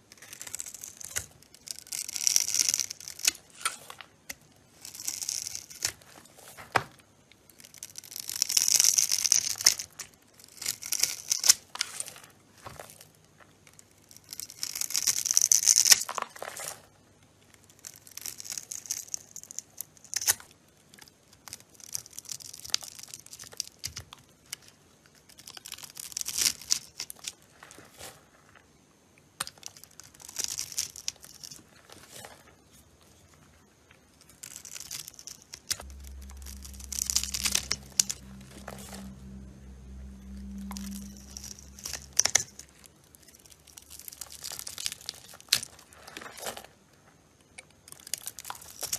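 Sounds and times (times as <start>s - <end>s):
blade scraping bar soap: 0.1s - 6.6s, 7.6s - 13.0s.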